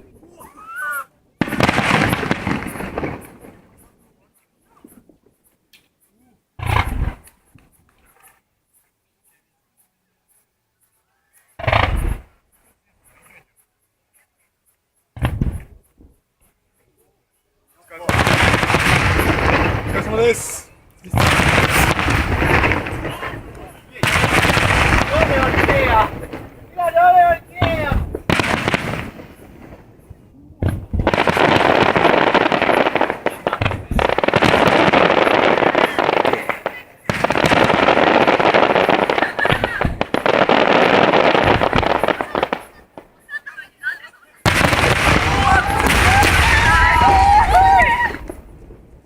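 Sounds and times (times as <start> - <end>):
firework bursts: 1.4 - 3.9, 6.6 - 7.5, 11.6 - 12.4, 15.2 - 16.0, 17.9 - 49.0.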